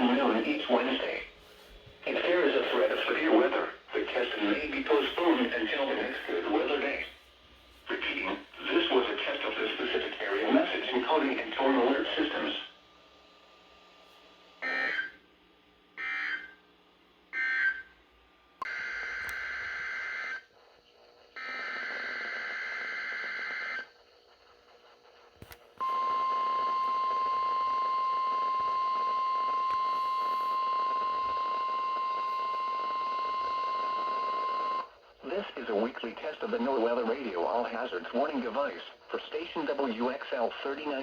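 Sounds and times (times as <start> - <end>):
long alarm beep: 25.8 - 34.9.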